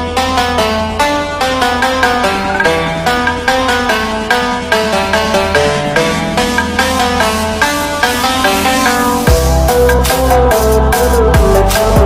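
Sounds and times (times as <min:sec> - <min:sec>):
bass line: 0:00.0 - 0:12.0
plucked string melody: 0:00.0 - 0:12.0
quick regular beat: 0:04.8 - 0:12.0.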